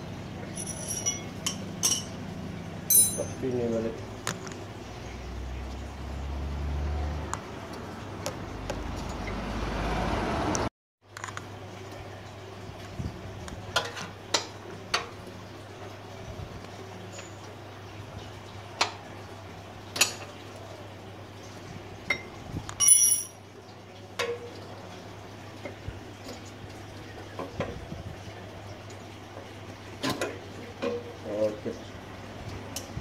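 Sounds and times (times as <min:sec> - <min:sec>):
metal parts and tools clinking: 0:00.5 - 0:02.2, 0:02.9 - 0:03.4, 0:22.8 - 0:23.4
ringing metal clink: 0:00.5 - 0:02.2, 0:02.9 - 0:03.4, 0:22.8 - 0:23.4.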